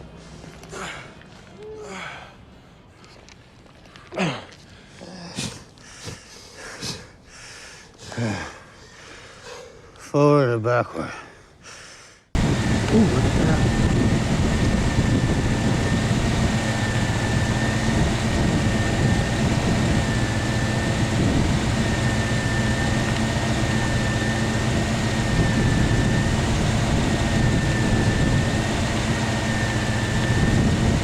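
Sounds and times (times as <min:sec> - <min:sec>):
vehicle engine hum with whine: 0:12.4 - 0:31.0.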